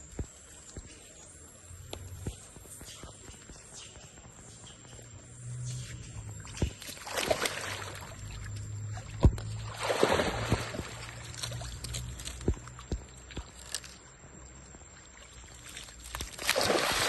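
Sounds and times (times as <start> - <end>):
low steady hum: 0.0 - 17.0
pool water splashing: 5.8 - 14.0, 14.8 - 17.0.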